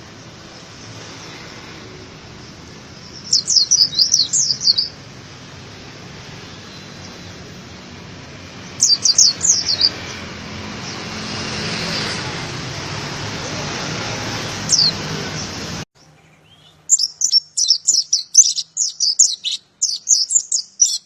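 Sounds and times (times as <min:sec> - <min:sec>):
bird chirping: 0:02.4 - 0:05.0, 0:06.3 - 0:07.3, 0:08.5 - 0:12.1, 0:14.5 - 0:21.0.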